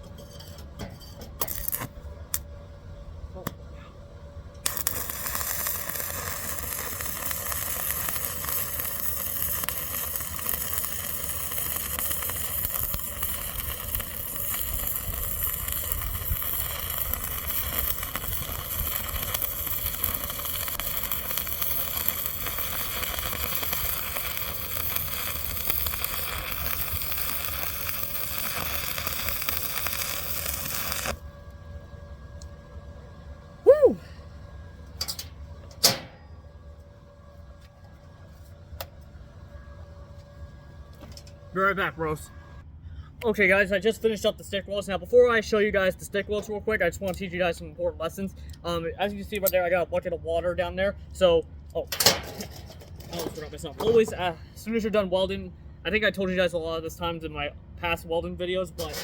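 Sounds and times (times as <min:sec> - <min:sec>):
low hum: 0:00.8 - 0:43.7
welding arc crackling: 0:01.4 - 0:02.4, 0:04.6 - 0:31.2.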